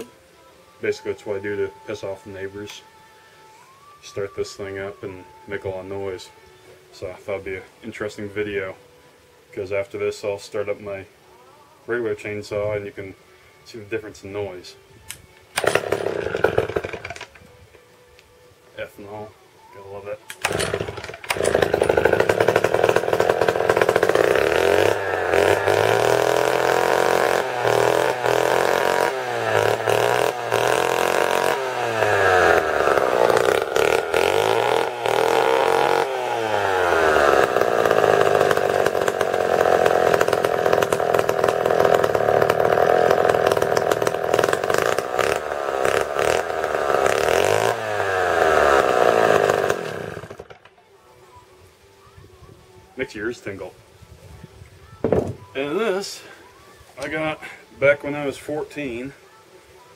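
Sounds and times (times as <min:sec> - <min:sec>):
chainsaw engine revving: 0:15.6 - 0:17.3, 0:20.3 - 0:50.7.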